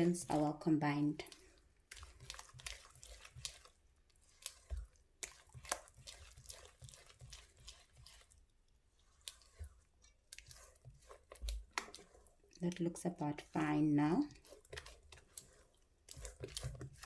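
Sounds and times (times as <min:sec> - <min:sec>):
batter stirred in bowl: 0:00.0 - 0:17.0.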